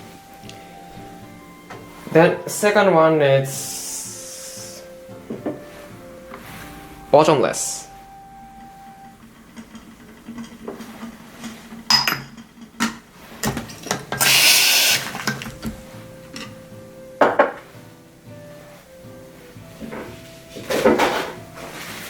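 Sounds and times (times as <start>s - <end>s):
short hiss: 3.5s - 5.0s, 14.2s - 15.3s.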